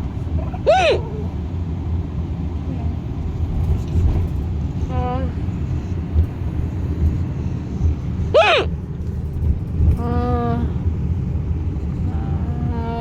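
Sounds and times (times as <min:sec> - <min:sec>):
car road rumble: 0:00.0 - 0:13.0
woman hiccup squeak: 0:08.4 - 0:08.7.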